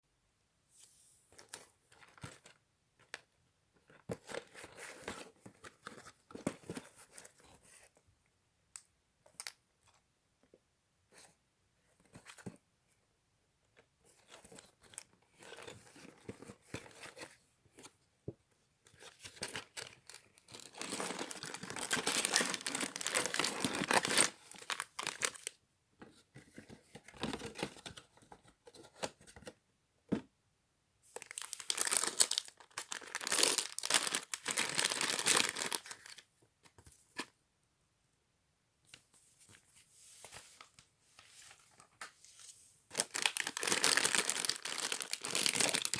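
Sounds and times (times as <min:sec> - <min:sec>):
packaging tearing and rustling: 0:19.4 - 0:25.5, 0:31.2 - 0:36.2, 0:42.9 - 0:45.9.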